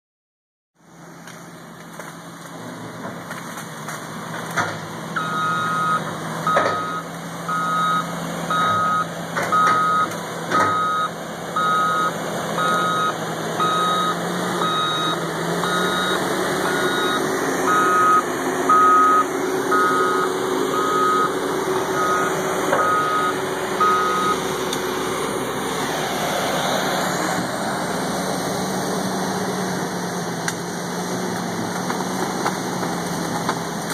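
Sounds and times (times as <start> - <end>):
loader engine running: 0.8 - 33.9
reversing alarm beeping: 5.2 - 24.5.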